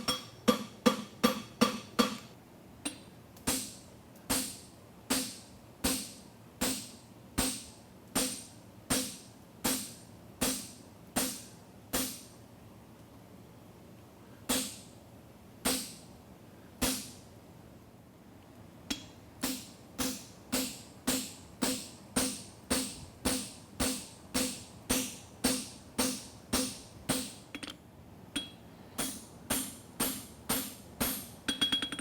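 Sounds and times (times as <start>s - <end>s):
hammer striking horseshoe on anvil: 0.0s - 7.6s, 8.2s - 12.2s, 18.9s - 27.8s, 28.4s - 32.0s.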